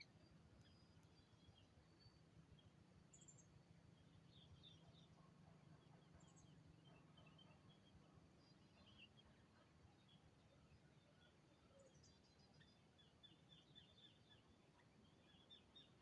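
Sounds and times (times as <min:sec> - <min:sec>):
faint bird chirps: 0:00.0 - 0:01.0.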